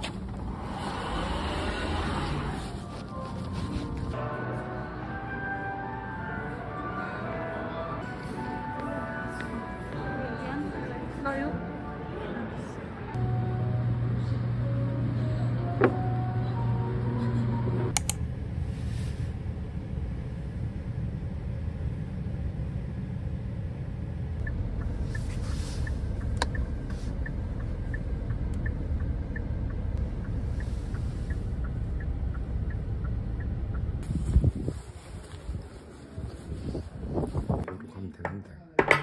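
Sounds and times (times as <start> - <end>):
car road and engine rumble: 0.0 - 4.2, 13.0 - 38.3.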